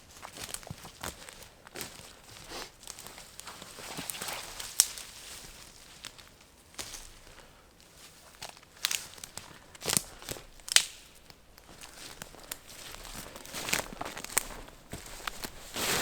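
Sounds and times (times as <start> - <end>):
crinkling and crackling with snaps: 0.0 - 16.0.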